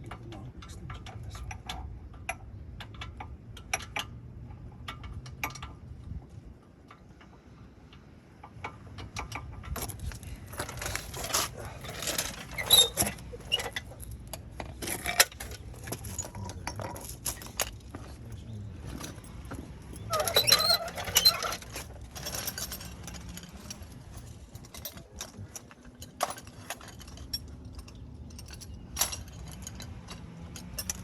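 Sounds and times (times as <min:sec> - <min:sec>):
metal hand tools clinking: 0:09.8 - 0:31.0.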